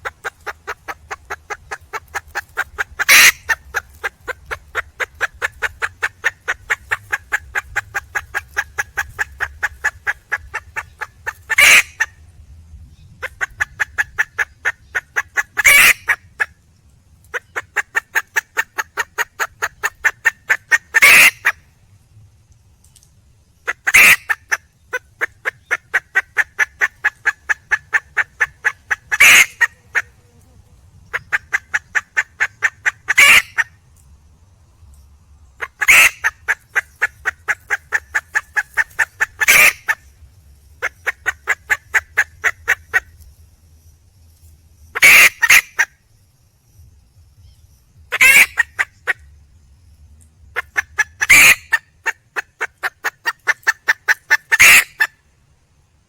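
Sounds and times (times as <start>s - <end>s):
hen rapid clucking: 0.0s - 12.2s, 13.2s - 16.5s, 17.3s - 21.6s, 23.7s - 30.2s, 31.1s - 33.8s, 35.5s - 40.1s, 40.8s - 43.3s, 45.0s - 45.9s, 48.1s - 49.3s, 50.5s - 55.2s.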